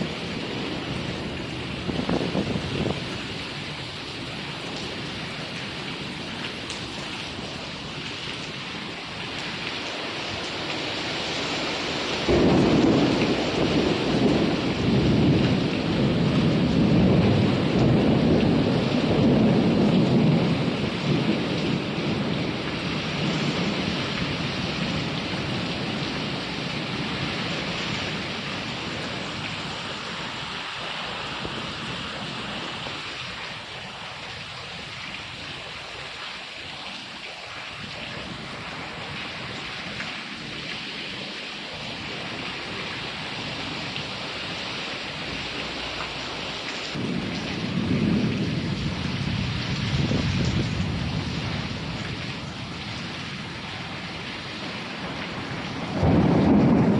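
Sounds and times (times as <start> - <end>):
thunder rumbling: 0.0 - 36.2, 41.7 - 56.9
heavy rain hissing: 0.0 - 56.9.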